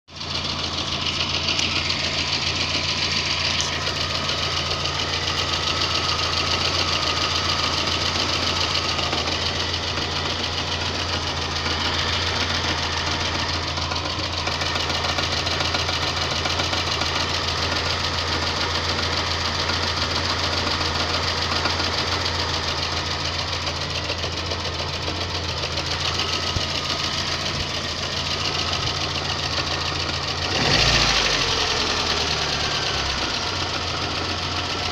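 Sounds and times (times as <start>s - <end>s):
car engine idling with a knock: 23.1s - 30.3s.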